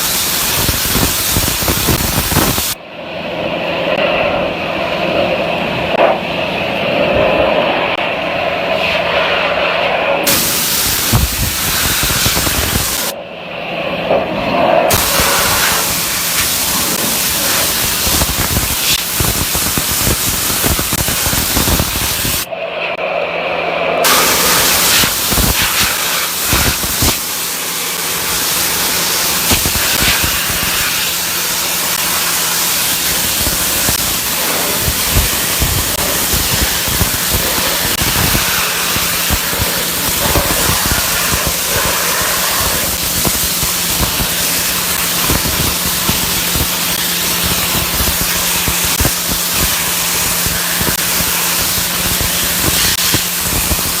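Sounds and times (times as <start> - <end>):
dry ice blaster hissing: 0.0 - 2.8, 10.2 - 13.1, 14.9 - 22.5, 24.0 - 54.0
sharp crackling impacts: 0.0 - 2.8, 10.3 - 13.2, 14.9 - 22.5, 24.0 - 54.0
low hum: 1.2 - 26.7.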